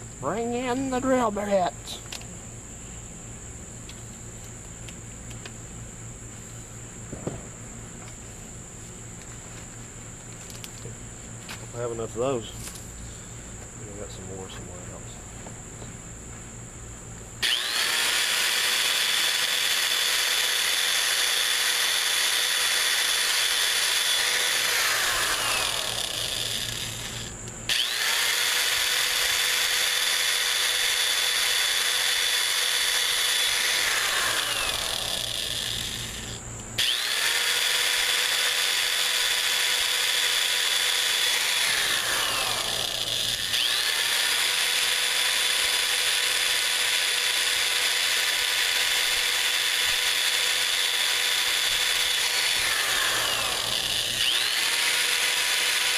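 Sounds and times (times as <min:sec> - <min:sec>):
electric drill whining: 0:17.4 - 0:55.9.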